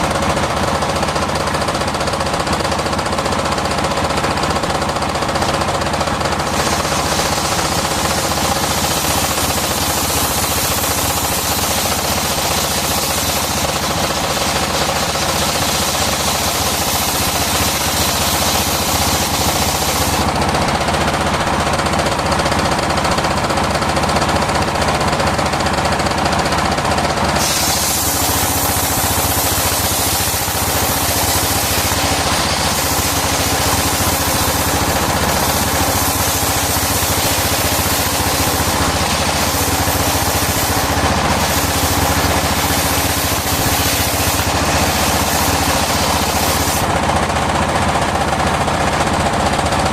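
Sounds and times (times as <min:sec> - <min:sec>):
circular sawmill running: 0:00.0 - 0:49.9
loud high hiss: 0:06.3 - 0:20.4, 0:27.3 - 0:46.9.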